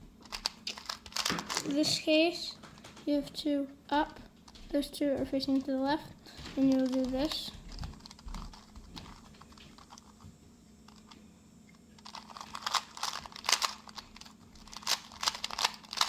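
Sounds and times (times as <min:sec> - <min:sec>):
plastic puzzle cube clicking: 0:00.2 - 0:01.8, 0:12.0 - 0:16.0.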